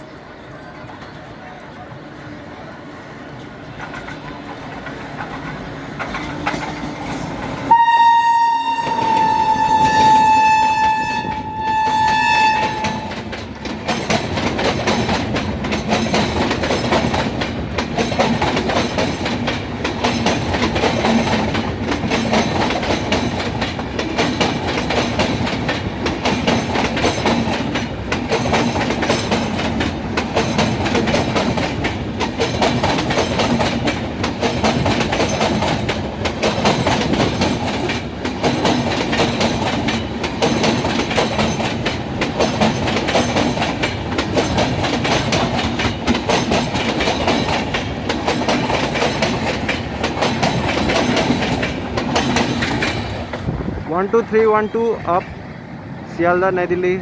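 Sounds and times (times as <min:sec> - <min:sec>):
train wheels clacking over rail joints: 0:03.4 - 0:53.6
train horn: 0:07.7 - 0:13.3.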